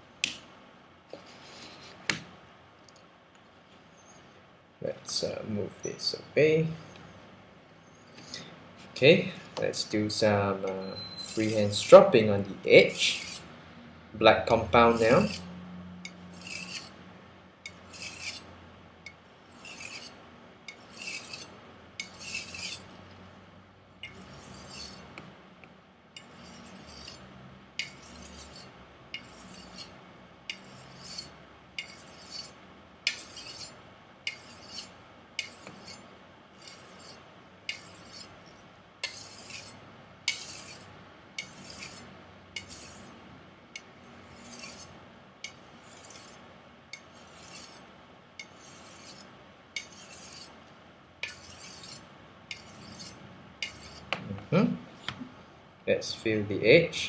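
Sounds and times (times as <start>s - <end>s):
knife stropping strokes: 10.7s - 12.2s, 12.8s - 13.4s, 14.9s - 15.5s, 16.3s - 17.0s, 17.7s - 18.5s, 19.5s - 22.9s, 24.0s - 25.1s, 27.8s - 36.0s, 36.6s - 43.2s, 43.8s - 47.8s, 48.4s - 50.6s, 51.2s - 54.2s.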